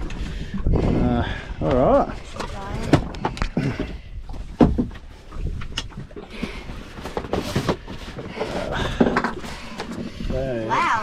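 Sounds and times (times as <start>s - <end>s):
wind noise on microphone: 0.0s - 9.2s
knocks and thumps on boat deck: 2.4s - 10.3s.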